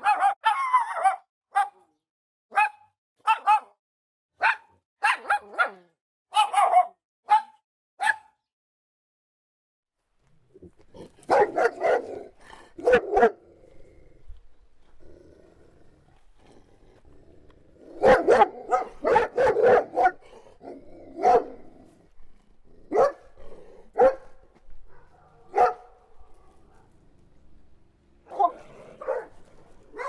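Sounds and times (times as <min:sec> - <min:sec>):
dog barking: 0:00.0 - 0:01.9, 0:02.5 - 0:03.8, 0:04.4 - 0:08.4, 0:11.3 - 0:13.4, 0:18.0 - 0:21.6, 0:22.9 - 0:26.9, 0:28.3 - 0:29.4.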